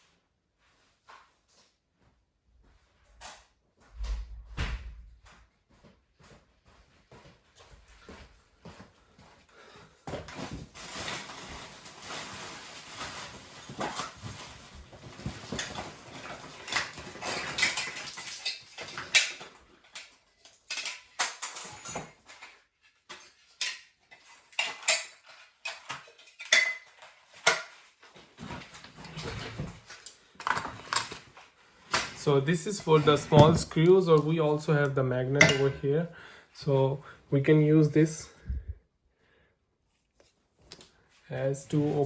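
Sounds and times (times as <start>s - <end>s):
metal parts rustling and scraping: 10.3s - 33.9s
metal tools clicking and clinking: 15.6s - 22.5s, 23.1s - 27.8s, 35.4s - 35.8s.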